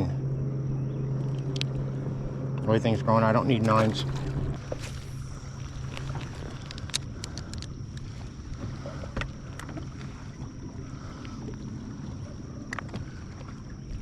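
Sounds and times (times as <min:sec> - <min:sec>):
thin high whine: 0:00.0 - 0:12.4
boat engine low rumble: 0:00.0 - 0:14.0.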